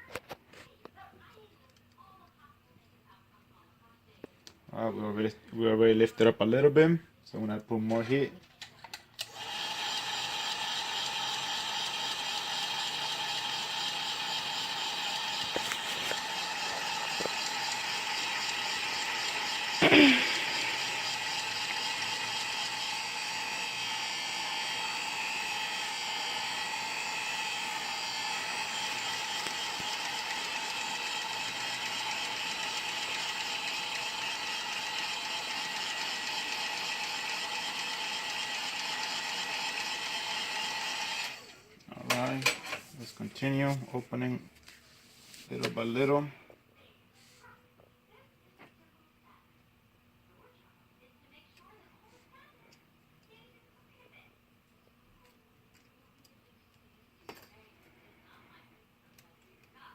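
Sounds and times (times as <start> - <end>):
heat gun blowing air: 14.1 - 32.5.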